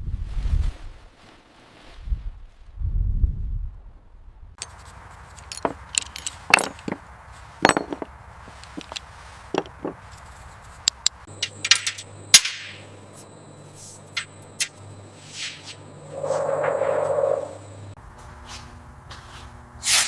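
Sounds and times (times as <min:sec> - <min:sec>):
hand tools clinking: 0:04.6 - 0:12.8
low hum: 0:11.0 - 0:18.0.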